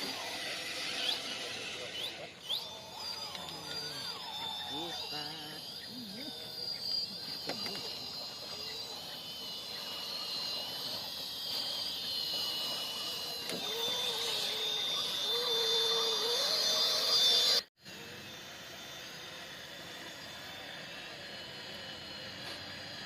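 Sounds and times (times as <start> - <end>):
small electric motor whining: 0.0 - 23.0
high insect chirr: 2.6 - 17.7.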